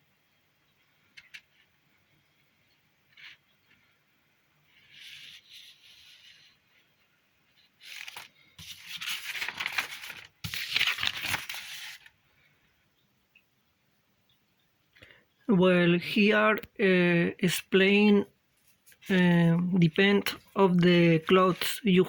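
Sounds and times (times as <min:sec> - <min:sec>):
handling rustling and rubbing: 0:04.7 - 0:12.2, 0:18.5 - 0:22.0.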